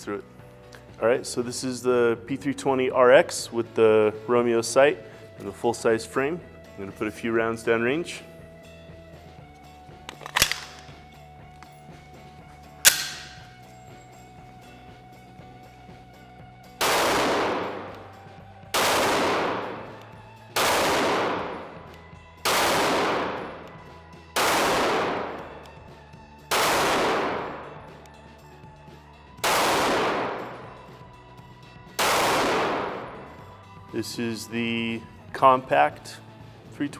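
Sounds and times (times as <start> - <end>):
pistol shots: 10.1 - 11.0, 12.8 - 13.6, 16.8 - 23.8, 24.4 - 25.7, 26.5 - 27.9, 29.4 - 30.8, 32.0 - 33.4.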